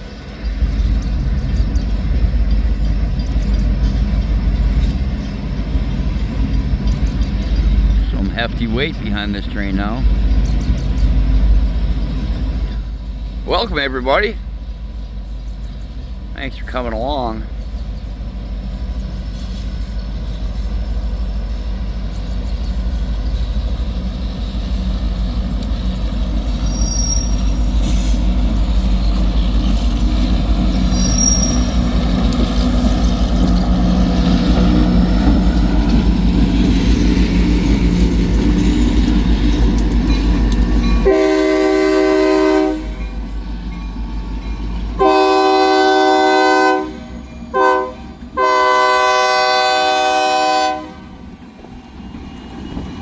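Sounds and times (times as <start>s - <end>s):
train wheel squeals: 0.0s - 16.3s, 17.4s - 48.4s
freight train rumbling: 0.0s - 53.0s
locomotive horn blasts: 41.0s - 43.2s, 45.0s - 51.2s.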